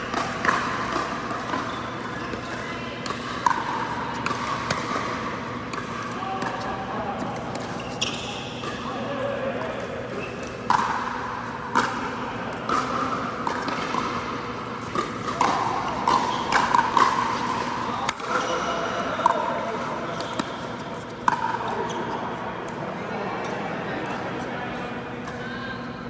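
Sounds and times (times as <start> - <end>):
paddles hitting ball: 12.6 - 21.6.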